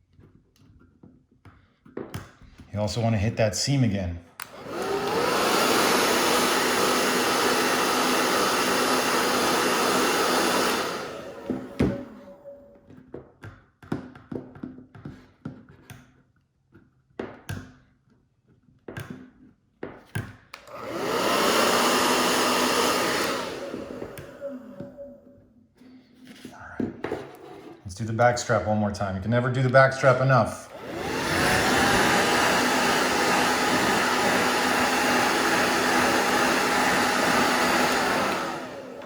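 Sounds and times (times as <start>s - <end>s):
blow dryer running: 2.8s - 12.8s, 20.6s - 25.4s, 28.1s - 39.0s.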